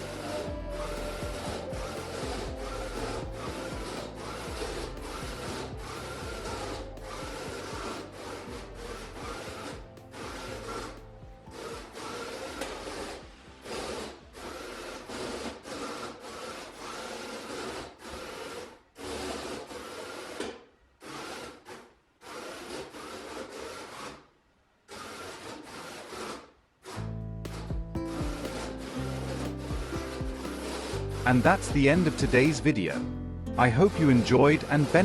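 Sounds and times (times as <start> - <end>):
music: 0.0 - 16.2, 27.0 - 35.0
electric motors whirring: 0.0 - 20.6.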